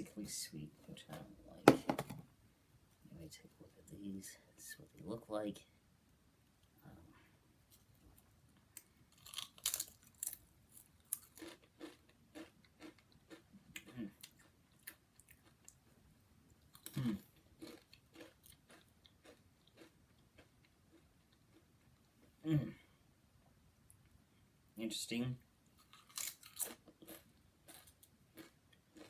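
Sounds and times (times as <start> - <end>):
person chewing crunchy crisps: 9.1 - 16.0, 16.6 - 21.8, 25.8 - 29.0.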